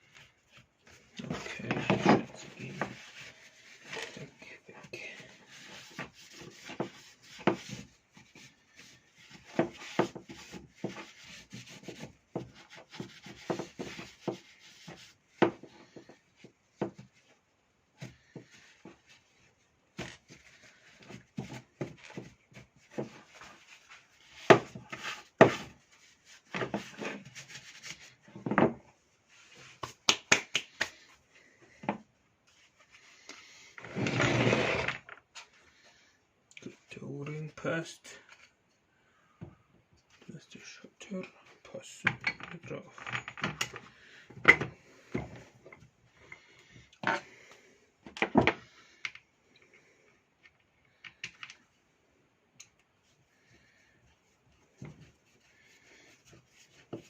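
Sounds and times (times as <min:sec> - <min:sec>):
rubbing and scraping of parts: 0:00.0 - 0:17.4, 0:18.0 - 0:35.6, 0:52.9 - 0:57.0
small clicks and knocks: 0:50.4 - 0:51.7.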